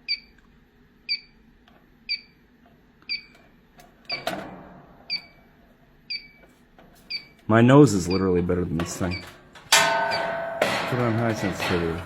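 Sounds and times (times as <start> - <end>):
gas detector beeping: 0.0 - 0.3, 1.1 - 1.4, 2.1 - 2.4, 3.1 - 3.4, 5.1 - 5.4, 6.1 - 6.5, 7.1 - 7.4, 9.1 - 9.3.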